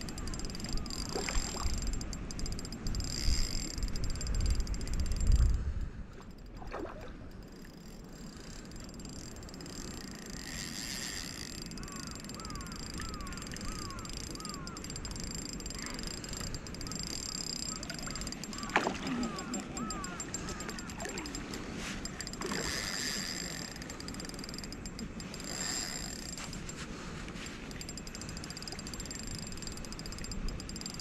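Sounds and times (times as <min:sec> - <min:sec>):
wind rumble on microphone: 0:00.0 - 0:07.3.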